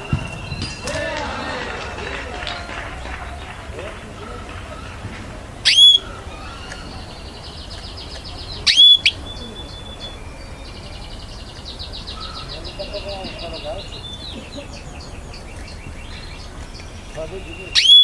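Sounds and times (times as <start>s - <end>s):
canary whistled notes: 0.0s - 1.6s, 5.6s - 7.1s, 8.6s - 11.1s, 16.8s - 18.0s
canary fast trill: 5.6s - 15.2s, 16.4s - 18.0s.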